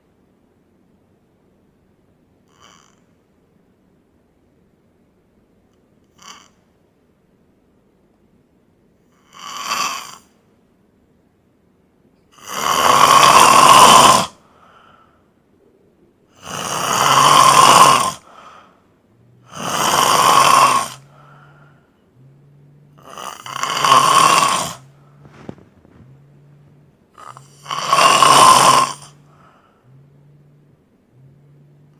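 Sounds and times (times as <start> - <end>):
man snoring: 2.5 - 3.0, 6.1 - 6.6, 9.1 - 10.3, 12.3 - 14.4, 16.3 - 31.9.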